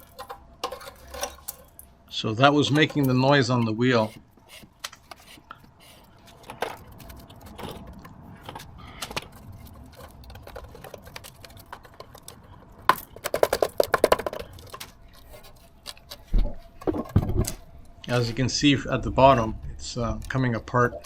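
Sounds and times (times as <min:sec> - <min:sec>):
rapid rattling and scraping: 0:00.0 - 0:01.9, 0:02.7 - 0:17.6
rusted metal crunching clicks: 0:00.0 - 0:01.9, 0:06.2 - 0:17.6.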